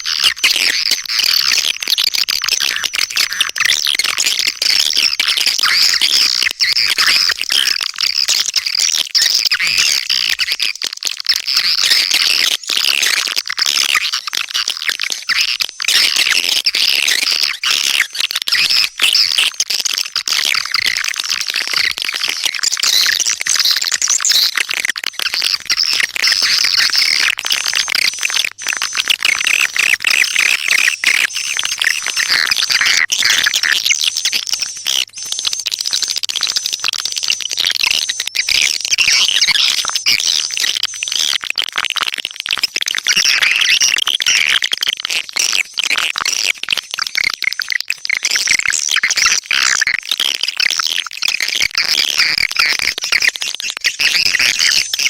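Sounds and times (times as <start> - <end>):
swiftlets chirping and twittering: 25.2 - 36.8.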